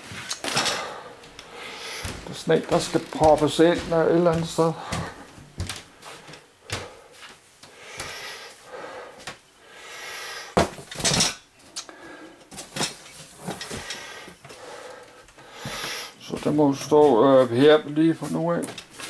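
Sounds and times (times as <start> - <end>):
furniture knocks and scraping: 2.0 - 5.8.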